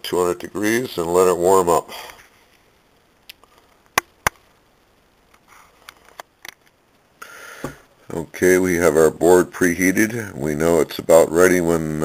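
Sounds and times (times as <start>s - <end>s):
short steady hiss: 1.8s - 8.2s.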